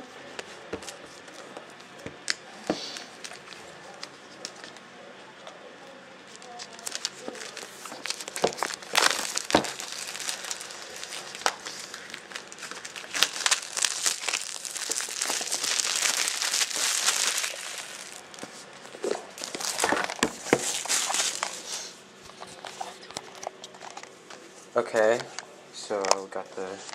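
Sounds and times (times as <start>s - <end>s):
plastic shrink-wrap tearing: 2.8s - 4.7s, 6.3s - 21.8s.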